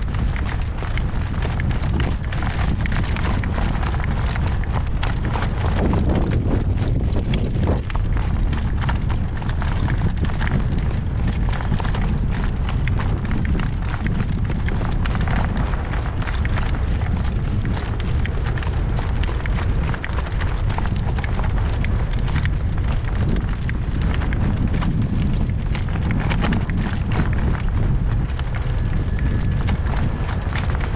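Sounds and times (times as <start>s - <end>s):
wind buffeting microphone: 0.0s - 30.9s.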